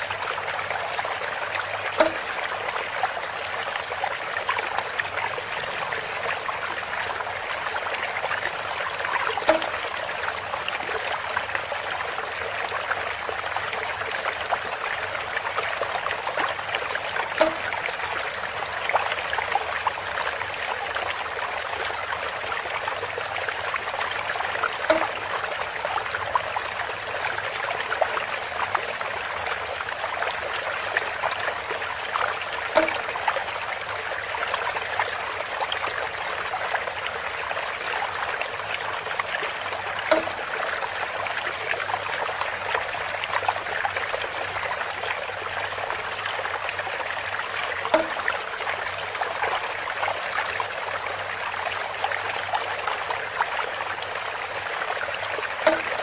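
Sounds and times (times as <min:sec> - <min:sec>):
water trickling from spout: 0:00.0 - 0:56.0.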